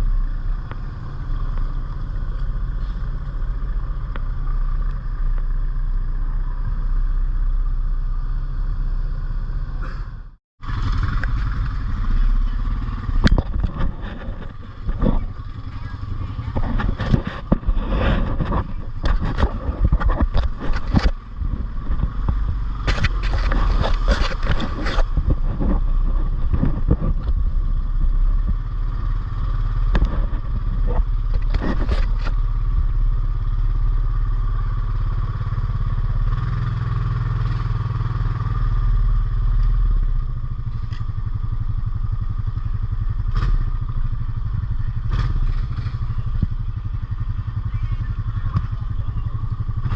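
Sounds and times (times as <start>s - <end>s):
quad bike engine running: 0.0s - 49.9s
knocks and clatter: 10.7s - 27.6s.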